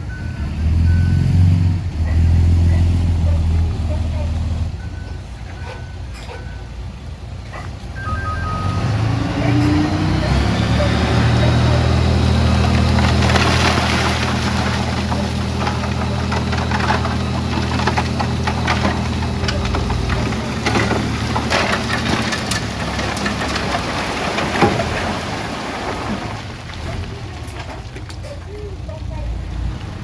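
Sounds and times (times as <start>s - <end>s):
bulldozer diesel engine running: 0.0s - 30.0s
stones cracking and knocking: 12.1s - 28.3s.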